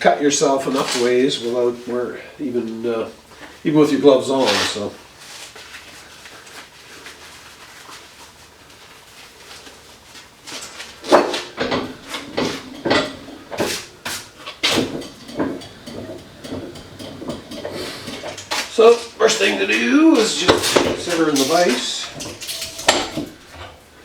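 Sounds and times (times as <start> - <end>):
gloves rustling: 0.4 - 24.0
hard objects knocking and clattering: 11.1 - 23.8.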